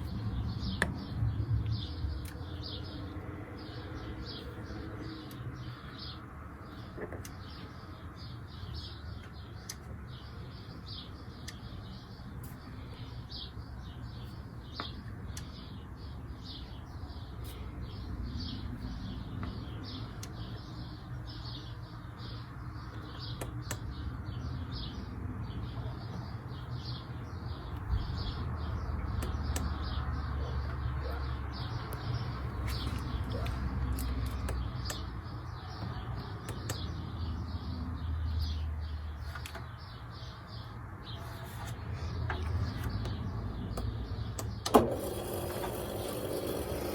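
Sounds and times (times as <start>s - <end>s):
washing machine hum: 44.7s - 46.9s.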